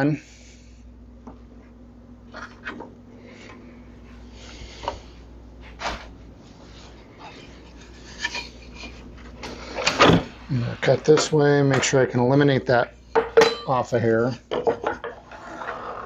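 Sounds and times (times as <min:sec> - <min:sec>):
low steady hum: 0:00.0 - 0:16.0
wood and tools knocking: 0:14.5 - 0:15.3.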